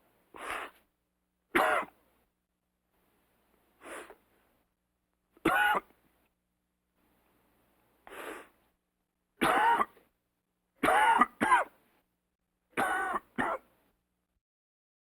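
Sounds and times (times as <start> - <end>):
person coughing: 1.6 - 2.0, 5.4 - 5.9, 9.4 - 10.1, 10.8 - 11.8, 12.8 - 13.7.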